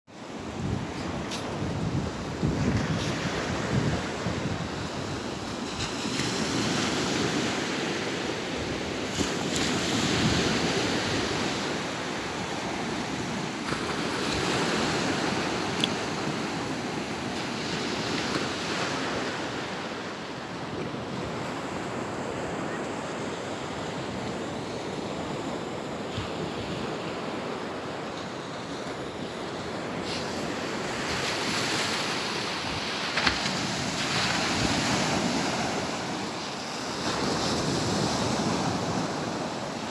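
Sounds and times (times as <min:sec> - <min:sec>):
wind on microphone: 0:00.4 - 0:07.6.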